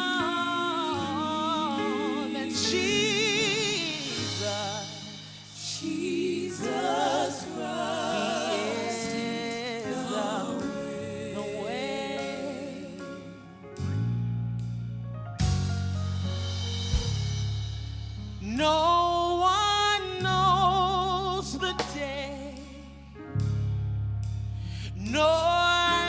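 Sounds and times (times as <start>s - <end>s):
gospel singing with vibrato: 0.0s - 13.7s, 18.4s - 23.1s, 24.8s - 26.0s.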